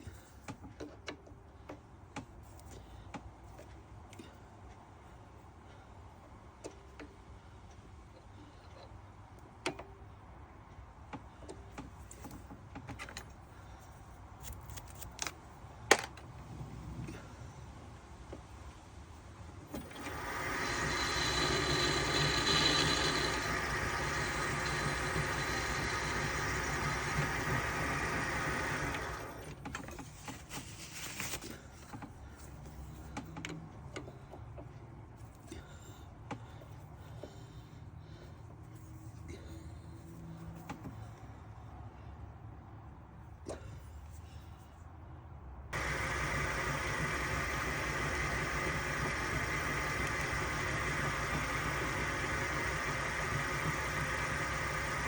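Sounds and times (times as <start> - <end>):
lathe running: 19.8 - 29.5, 45.8 - 55.0.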